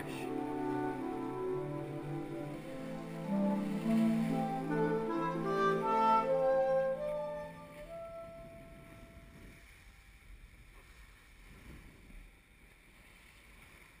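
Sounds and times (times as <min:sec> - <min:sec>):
instrumental background music: 0:00.0 - 0:09.2
faint low rumble: 0:06.6 - 0:14.0.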